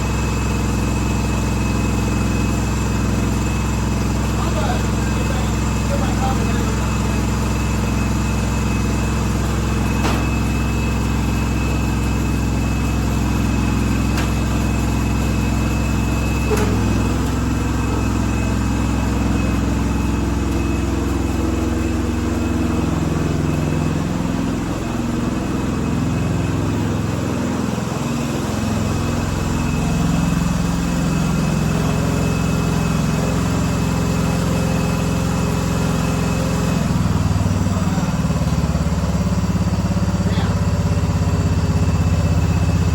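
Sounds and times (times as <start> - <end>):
small engine idling: 0.0 - 42.9.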